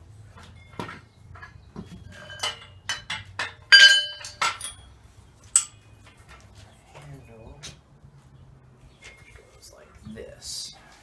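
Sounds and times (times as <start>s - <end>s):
metal parts clinking and knocking: 0.4s - 4.9s.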